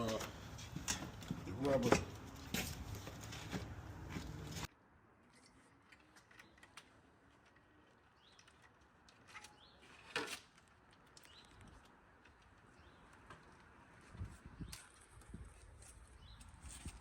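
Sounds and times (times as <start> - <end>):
faint birds chirping: 6.0 - 10.0, 11.0 - 16.9.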